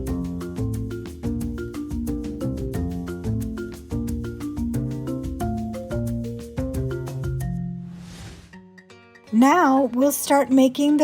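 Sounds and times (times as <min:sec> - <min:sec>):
mallet percussion tune: 0:00.0 - 0:07.9.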